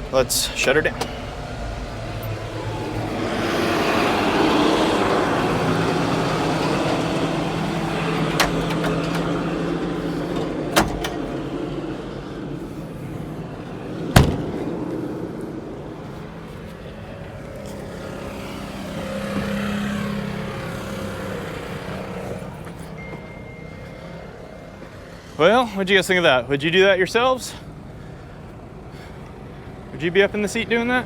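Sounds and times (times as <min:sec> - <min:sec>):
excavator diesel engine running: 0:00.0 - 0:25.2.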